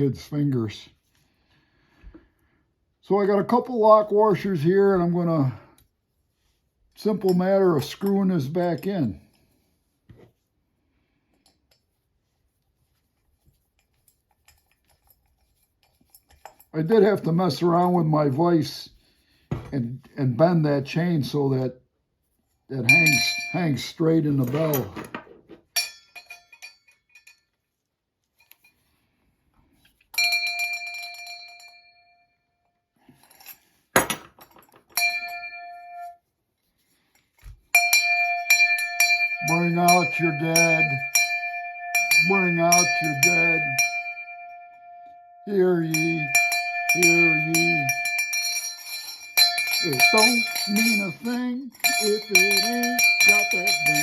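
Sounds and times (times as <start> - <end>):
light metal clinks: 13.4 - 16.8, 25.7 - 27.6, 37.0 - 45.2, 45.8 - 54.0
brass hand bell ringing: 22.9 - 23.9, 30.2 - 32.3, 35.0 - 36.2, 37.7 - 54.0.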